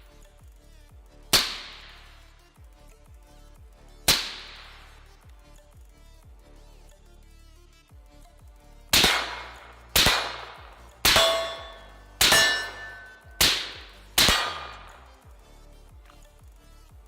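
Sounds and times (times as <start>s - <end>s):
rifle shots with echo: 1.4s - 2.2s, 4.1s - 5.0s, 8.9s - 15.0s.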